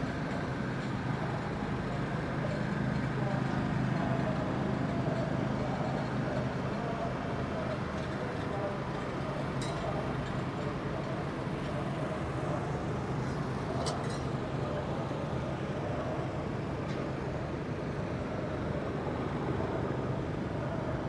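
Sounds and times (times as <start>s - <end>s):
engine drone: 0.0s - 21.0s.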